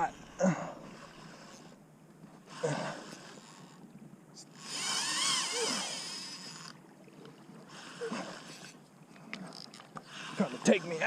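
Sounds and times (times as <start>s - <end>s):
fishing reel drag whining: 4.5s - 6.8s.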